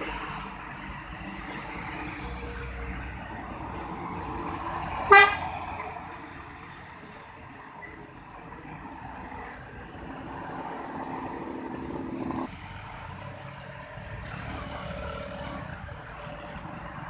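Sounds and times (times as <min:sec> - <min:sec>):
motor vehicles rumbling: 0:00.0 - 0:17.0.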